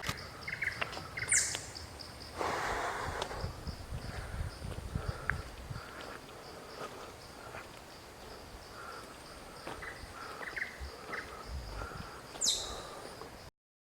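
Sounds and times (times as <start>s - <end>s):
short bird chirps: 0.5s - 1.8s, 12.4s - 12.8s.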